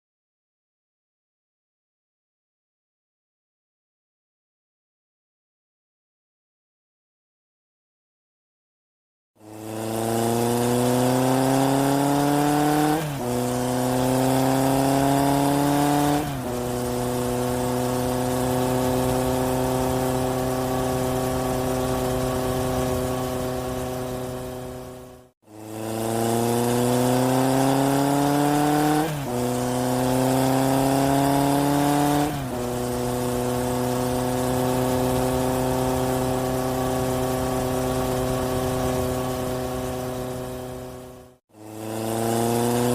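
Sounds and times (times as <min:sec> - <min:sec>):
vehicle engine accelerating: 0:09.4 - 0:42.9.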